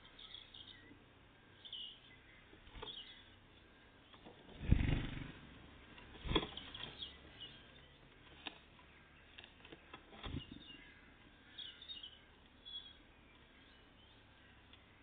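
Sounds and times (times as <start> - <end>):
wing flutters: 4.5 - 7.1
birds pecking and knocking: 5.9 - 7.1.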